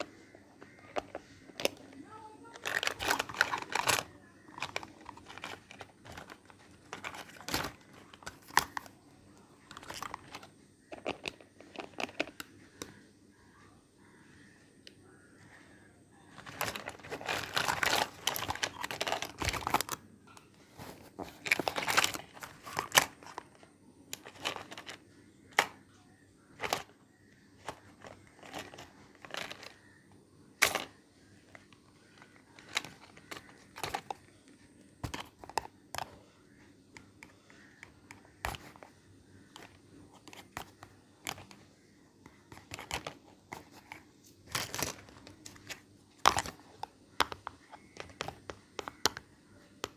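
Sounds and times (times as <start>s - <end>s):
packaging crinkling and tearing: 16.4s - 20.0s, 21.1s - 23.4s.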